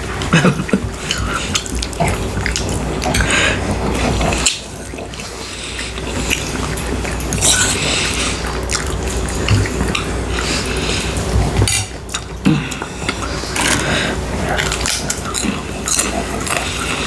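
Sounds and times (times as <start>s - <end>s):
wet chewing and eating: 6.2s - 10.0s.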